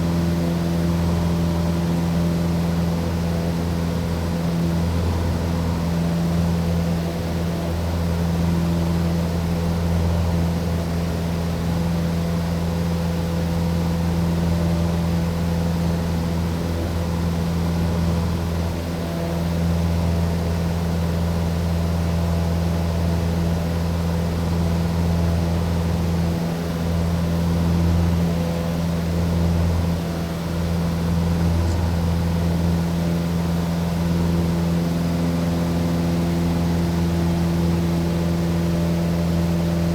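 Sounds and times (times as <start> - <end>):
aircraft engines droning: 26.0 - 39.9.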